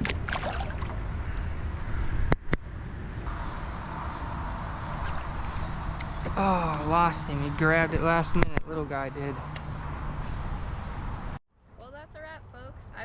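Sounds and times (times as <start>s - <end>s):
wind buffeting microphone: 0.0s - 11.4s
high hiss: 3.3s - 9.5s.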